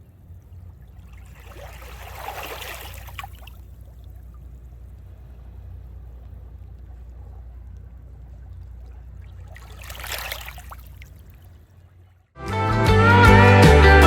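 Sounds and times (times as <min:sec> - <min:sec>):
steady low hum: 0:00.0 - 0:12.2
water rushing and splashing: 0:00.3 - 0:07.0, 0:08.2 - 0:11.8.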